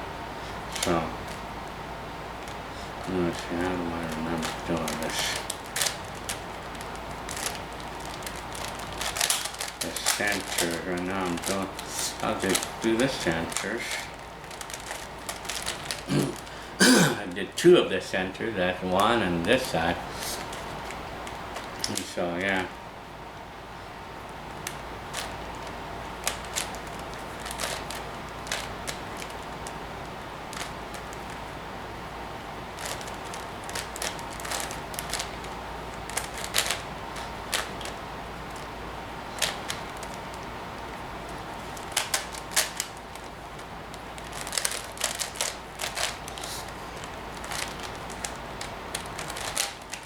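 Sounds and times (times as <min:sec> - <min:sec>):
puzzle cube clicking: 0:44.3 - 0:46.5.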